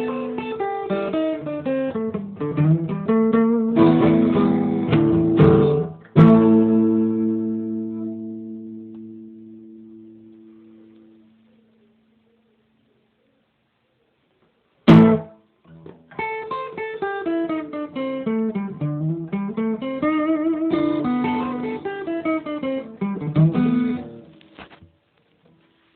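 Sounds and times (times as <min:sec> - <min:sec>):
acoustic guitar picked notes: 0:00.0 - 0:12.3, 0:14.9 - 0:24.8
acoustic guitar chord: 0:02.6 - 0:11.3.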